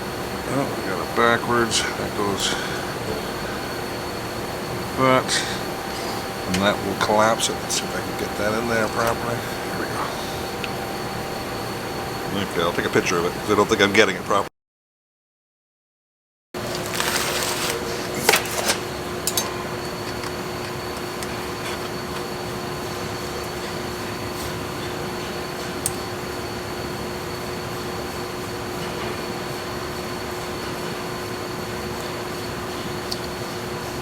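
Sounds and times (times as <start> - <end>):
machinery hum: 0.0 - 14.5, 16.6 - 34.0.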